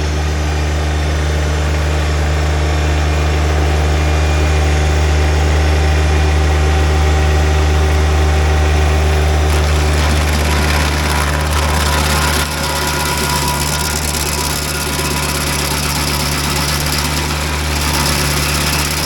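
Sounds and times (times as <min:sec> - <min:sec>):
tractor engine running: 0:00.0 - 0:19.0
stump grinder grinding hiss: 0:09.0 - 0:19.0.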